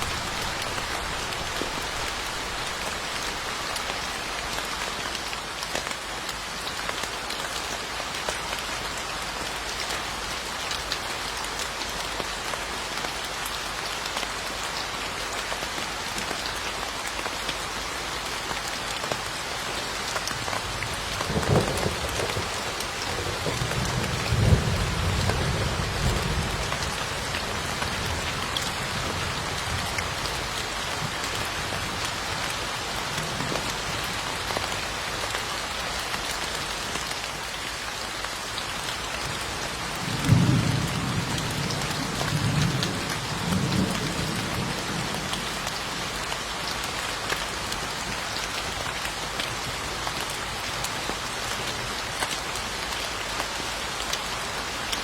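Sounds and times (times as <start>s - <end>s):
steady rain falling: 0.0s - 55.0s
thunder crack and rumble: 21.2s - 30.2s.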